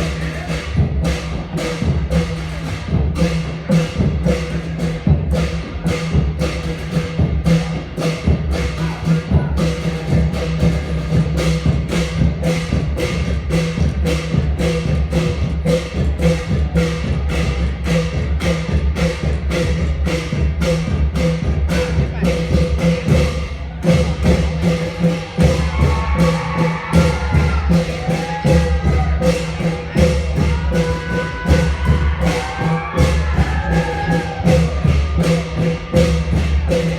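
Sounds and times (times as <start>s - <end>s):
drum ensemble playing: 0.0s - 36.9s.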